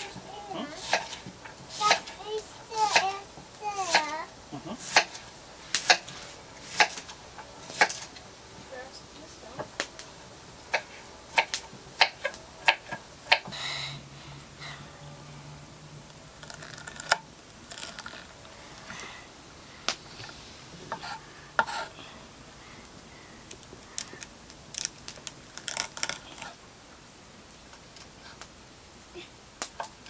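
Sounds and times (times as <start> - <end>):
knife chopping vegetables: 0.8 - 2.2, 2.8 - 4.2, 4.8 - 8.1, 10.7 - 13.4.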